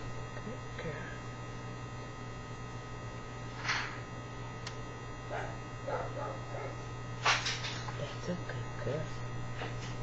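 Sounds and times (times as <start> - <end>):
steady electrical hum: 0.0 - 10.0.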